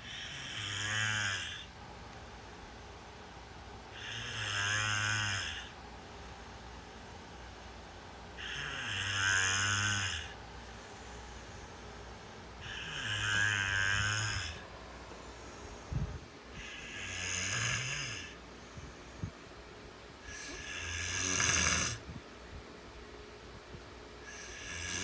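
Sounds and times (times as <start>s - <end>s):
person snoring: 0.0s - 1.7s, 3.9s - 5.8s, 8.4s - 18.4s, 20.2s - 22.1s, 24.2s - 25.0s.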